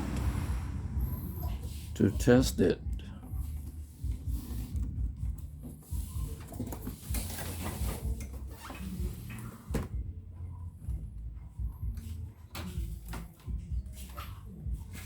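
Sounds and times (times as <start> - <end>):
steady low hum: 0.0 - 6.4.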